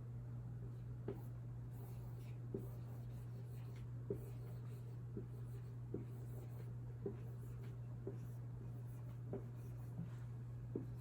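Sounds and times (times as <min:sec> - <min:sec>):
low electrical hum: 0:00.0 - 0:11.0
pen tapping while writing: 0:03.6 - 0:11.0.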